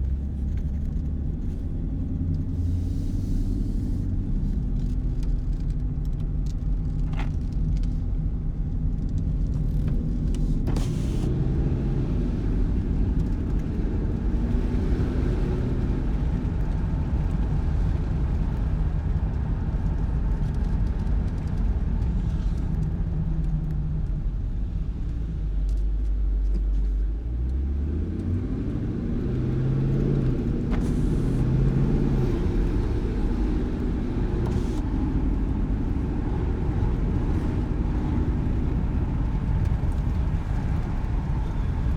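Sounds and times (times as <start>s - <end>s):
car engine running: 0.0s - 41.9s
car accelerating: 10.4s - 18.6s, 26.7s - 41.9s.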